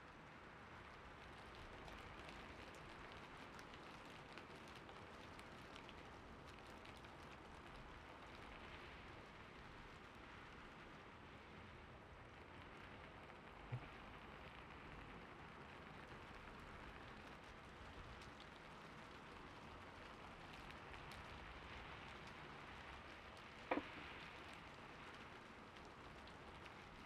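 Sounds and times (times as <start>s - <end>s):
gentle rain hiss: 0.0s - 27.0s
knock: 23.7s - 23.9s.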